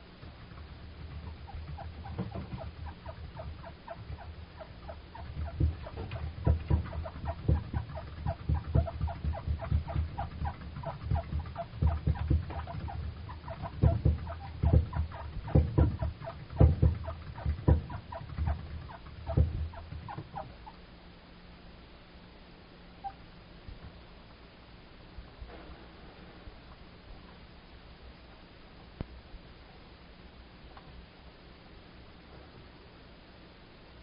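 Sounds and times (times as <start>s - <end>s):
exercise wheel knocking and clicking: 0.0s - 20.7s.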